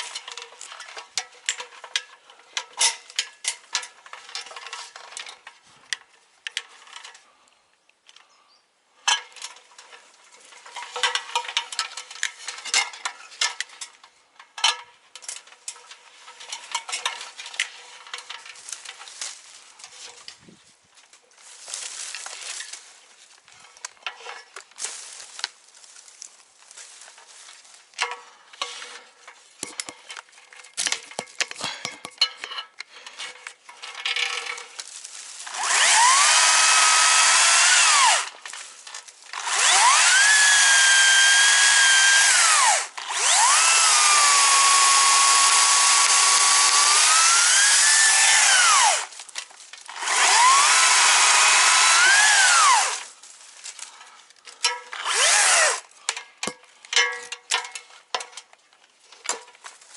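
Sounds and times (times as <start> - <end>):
chainsaw revving: 35.4 - 38.4, 39.3 - 49.1, 49.9 - 53.1, 55.0 - 55.8.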